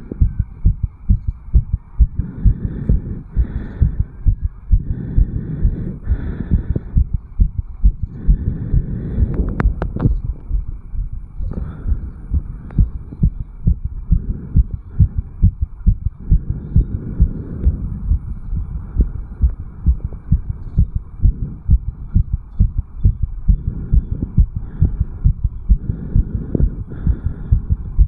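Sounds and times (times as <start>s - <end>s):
fast heartbeat thumps: 0.0s - 28.0s.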